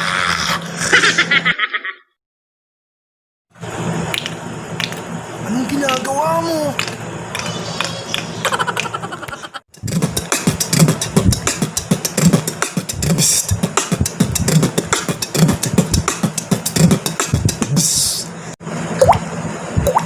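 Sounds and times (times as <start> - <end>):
beatboxing: 9.7 - 18.4
mouth hissing: 16.7 - 18.3.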